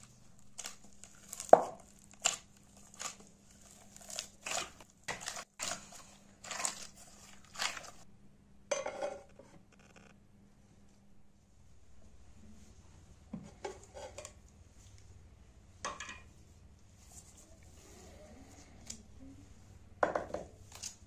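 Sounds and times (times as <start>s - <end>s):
crinkling rustling: 0.0s - 8.0s.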